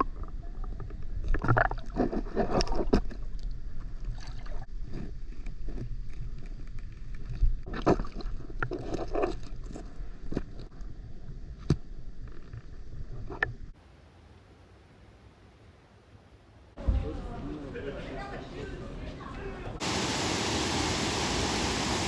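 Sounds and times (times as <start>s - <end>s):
water splashing and sloshing: 0.0s - 13.8s.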